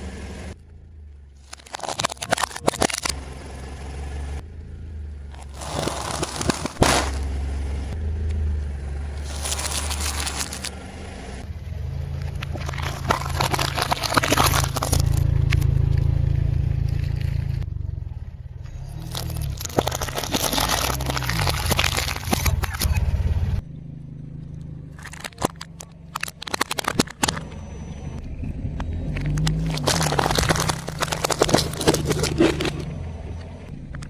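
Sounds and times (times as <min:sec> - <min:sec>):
car engine at low revs: 0:00.0 - 0:34.0
tyre crushing objects: 0:01.4 - 0:03.1, 0:05.4 - 0:07.3, 0:09.2 - 0:10.7, 0:12.4 - 0:15.2, 0:19.0 - 0:22.9, 0:29.3 - 0:32.9.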